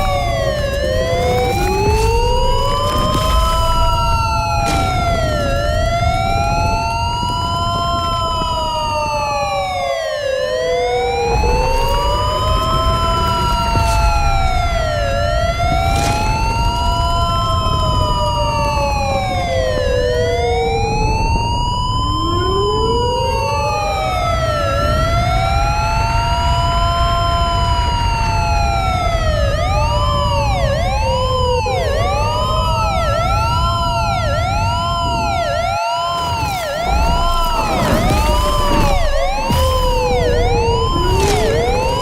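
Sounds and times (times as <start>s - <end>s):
low rumble: 0.0s - 9.3s, 11.1s - 20.2s, 36.2s - 42.0s
rising and falling siren tone: 0.0s - 42.0s
steady siren tone sliding down: 0.0s - 42.0s.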